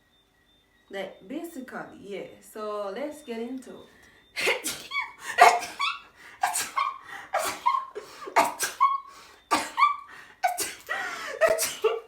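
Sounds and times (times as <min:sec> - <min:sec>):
woman sneezing: 0:04.4 - 0:12.0.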